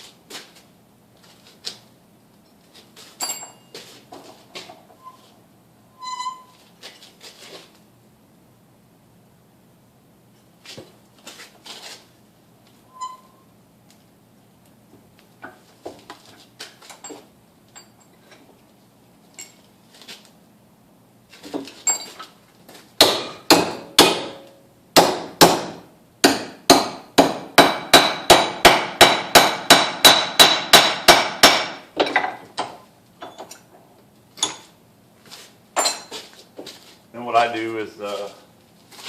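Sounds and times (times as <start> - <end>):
hammer striking metal strip: 23.0 - 31.8.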